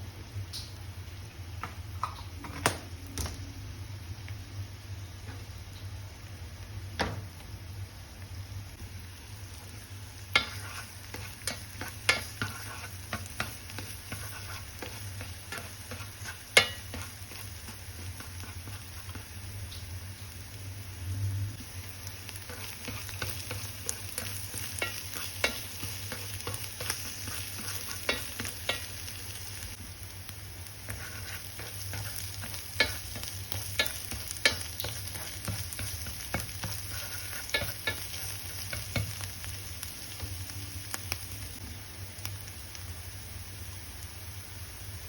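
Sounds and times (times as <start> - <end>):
food sizzling in a pan: 4.5 - 45.0
spatula clicking on pan: 10.3 - 18.3, 22.5 - 29.1, 31.7 - 39.2.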